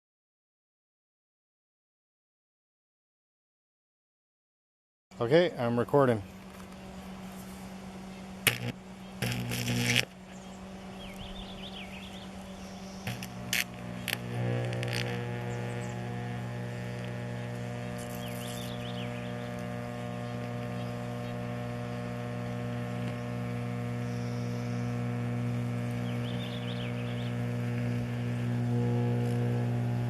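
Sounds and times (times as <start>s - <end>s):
electrical hum: 5.1s - 30.0s
faint electrical crackles: 6.0s - 30.0s.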